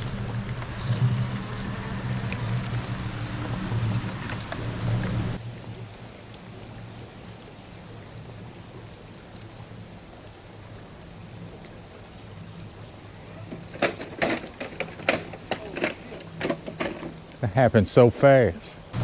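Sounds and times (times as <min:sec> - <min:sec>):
toy truck knocking on rocks: 0:13.5 - 0:17.2.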